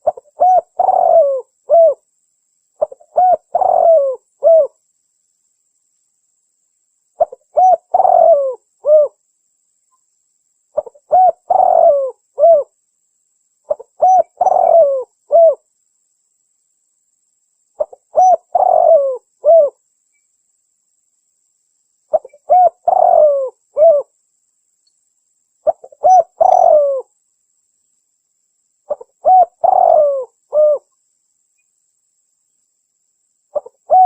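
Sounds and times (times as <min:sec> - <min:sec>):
dove cooing: 0:00.0 - 0:02.0, 0:02.8 - 0:04.8, 0:07.2 - 0:09.2, 0:10.8 - 0:12.7, 0:13.7 - 0:15.6, 0:17.8 - 0:19.8, 0:22.1 - 0:24.1, 0:25.6 - 0:27.1, 0:28.9 - 0:30.9, 0:33.5 - 0:34.0.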